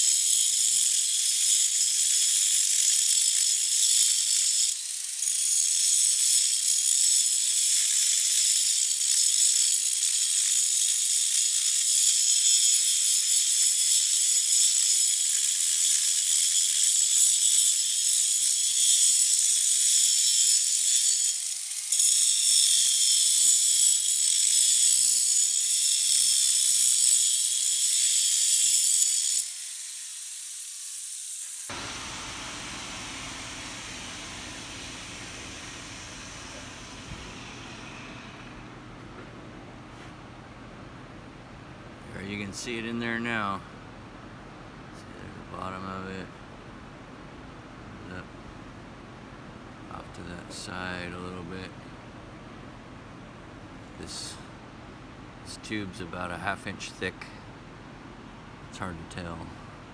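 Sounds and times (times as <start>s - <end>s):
grinder whining on steel: 0.0s - 39.3s.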